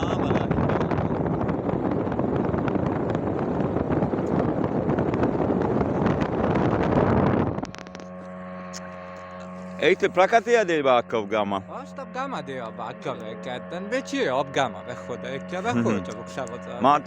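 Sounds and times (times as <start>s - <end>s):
wind buffeting microphone: 0.0s - 10.2s
steady hum with tones: 5.6s - 17.0s.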